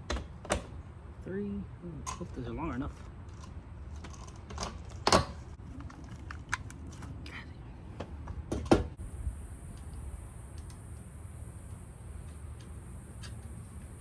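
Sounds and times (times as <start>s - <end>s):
steady high hiss: 9.0s - 14.0s.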